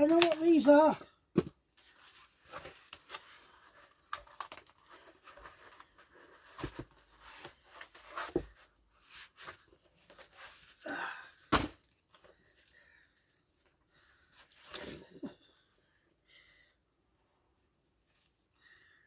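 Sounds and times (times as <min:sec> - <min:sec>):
packaging crinkling and tearing: 0:00.0 - 0:00.5.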